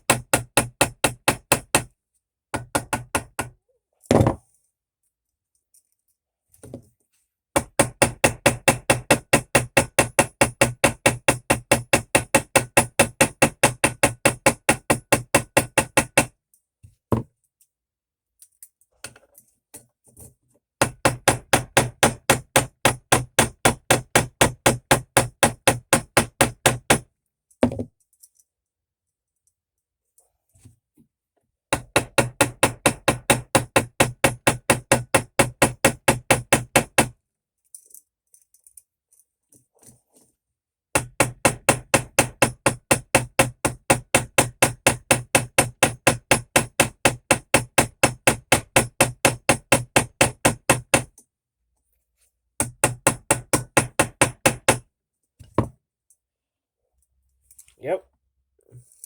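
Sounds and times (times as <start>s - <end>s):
small hammer tapping metal: 7.6s - 16.3s, 20.8s - 27.0s, 41.0s - 51.2s, 52.6s - 54.8s.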